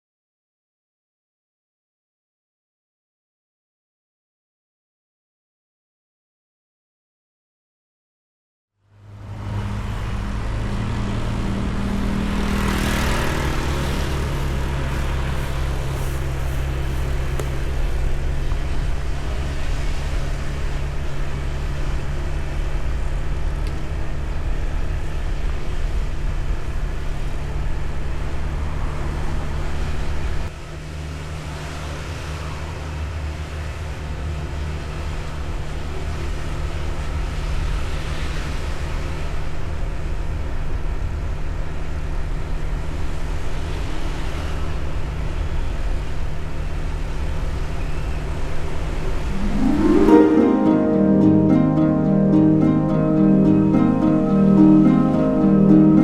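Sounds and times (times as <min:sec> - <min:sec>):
wind and road noise: 0:09.0 - 0:49.4
scooter engine running: 0:11.8 - 0:18.8.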